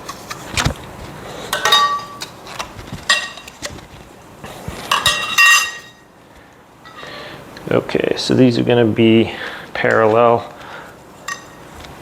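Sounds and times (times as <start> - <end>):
steel tubes clinking and knocking: 1.5 - 2.2, 4.9 - 6.0, 11.2 - 11.6.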